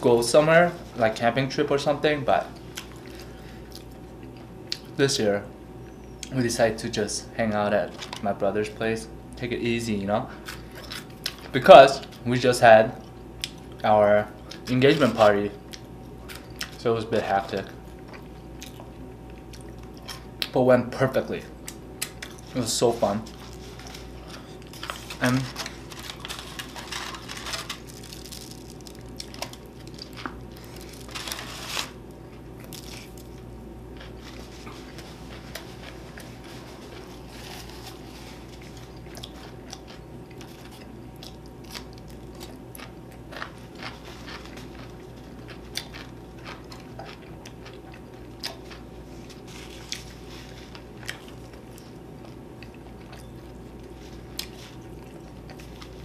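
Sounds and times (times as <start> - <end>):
steady low hum: 0.0 - 56.0
person chewing food: 17.8 - 20.5, 23.3 - 56.0.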